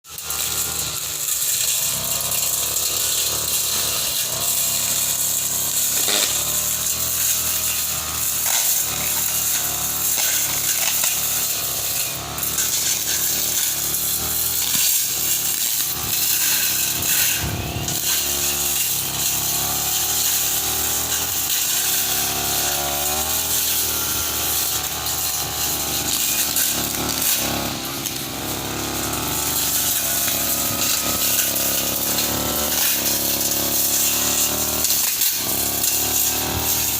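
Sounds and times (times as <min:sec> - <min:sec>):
brush cutter engine running: 0:00.1 - 0:36.9.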